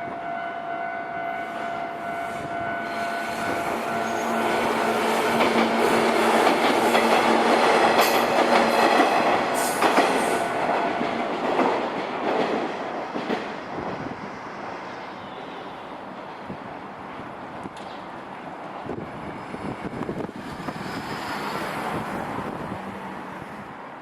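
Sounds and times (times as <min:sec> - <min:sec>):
train wheels clattering over rails: 0:03.4 - 0:13.7.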